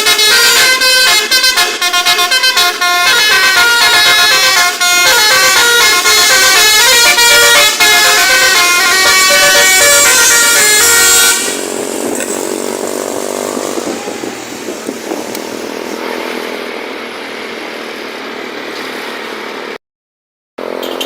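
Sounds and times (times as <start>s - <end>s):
multi-note bus horn: 0.0s - 16.5s
small engine running: 7.8s - 16.7s.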